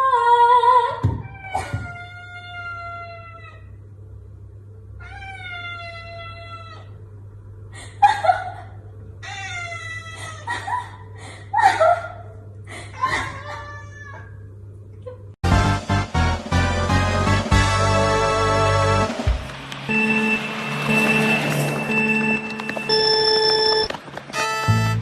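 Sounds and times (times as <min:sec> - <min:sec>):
cat meowing and yowling: 0:01.2 - 0:03.7, 0:05.0 - 0:06.9, 0:13.2 - 0:14.3
low hum: 0:14.5 - 0:25.0
music: 0:15.4 - 0:23.3, 0:24.3 - 0:25.0.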